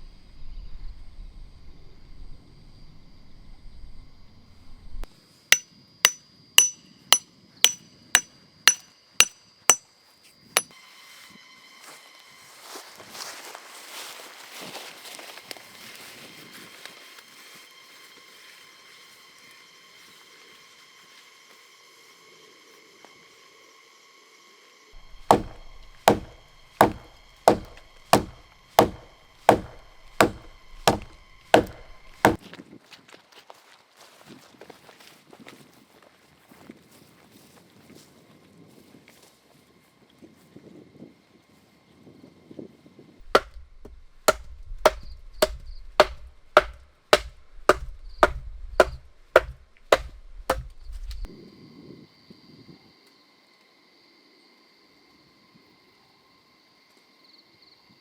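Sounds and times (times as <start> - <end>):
wood being chopped: 25.0 - 32.4, 43.2 - 51.3.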